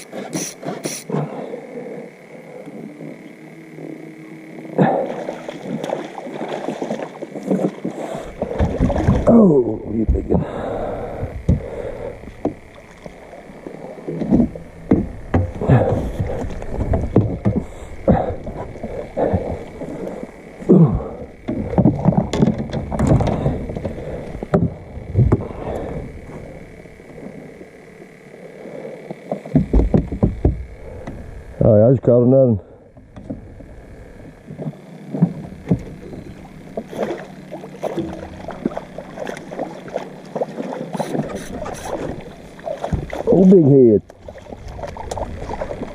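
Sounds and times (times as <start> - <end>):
faint high-pitched hum: 0.0 - 45.9
knocks and thumps on a boat: 5.6 - 10.6, 11.2 - 13.2, 14.0 - 20.0, 20.7 - 26.4, 29.2 - 31.3, 32.9 - 33.8, 34.5 - 45.9.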